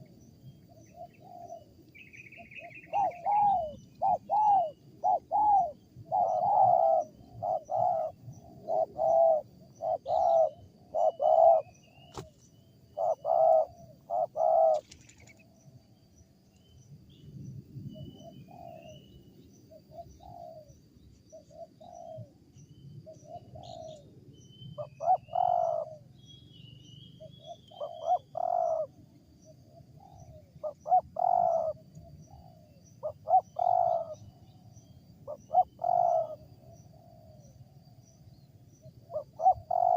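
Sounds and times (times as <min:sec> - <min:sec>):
dove cooing: 0:00.8 - 0:12.3, 0:13.0 - 0:15.4, 0:18.0 - 0:19.0, 0:19.8 - 0:20.7, 0:21.3 - 0:22.4, 0:23.1 - 0:24.1, 0:24.8 - 0:26.1, 0:27.2 - 0:29.0, 0:29.7 - 0:34.2, 0:35.3 - 0:37.3, 0:39.1 - 0:39.9.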